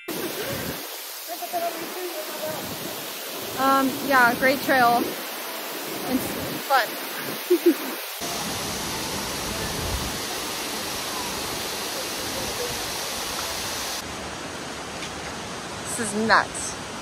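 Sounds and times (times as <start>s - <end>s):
waterfall rushing: 0.0s - 17.0s
person's voice: 3.6s - 5.1s.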